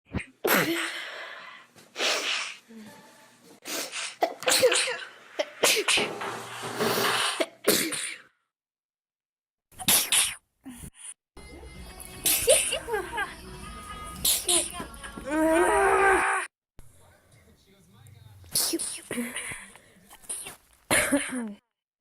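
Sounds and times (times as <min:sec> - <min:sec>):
people sneezing: 0:00.1 - 0:01.0, 0:01.9 - 0:02.6, 0:03.6 - 0:06.1, 0:07.0 - 0:08.3, 0:09.8 - 0:10.4, 0:12.2 - 0:13.2, 0:14.2 - 0:14.7, 0:18.5 - 0:19.6.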